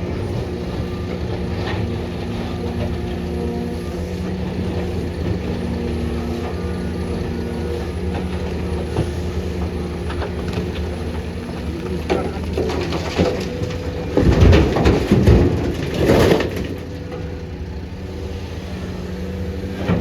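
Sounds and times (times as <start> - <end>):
diesel engine running: 0.0 - 20.0
knocks and clanks: 11.6 - 17.3.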